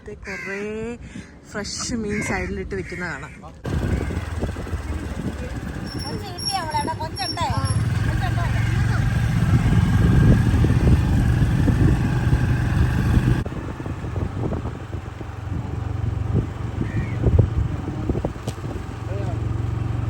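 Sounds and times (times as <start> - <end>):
wind rumbling on microphone: 0.0 - 19.3
motor scooter running: 3.6 - 20.0.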